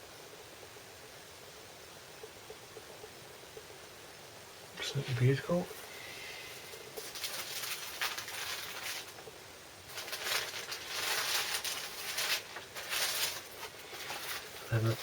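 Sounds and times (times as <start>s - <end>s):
vinyl record sleeve rustling: 6.5s - 15.0s.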